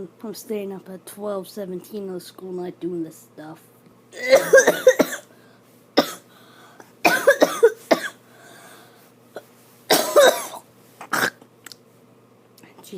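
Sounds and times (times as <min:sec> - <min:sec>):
person coughing: 0:04.2 - 0:05.3, 0:06.0 - 0:08.2, 0:09.4 - 0:11.4.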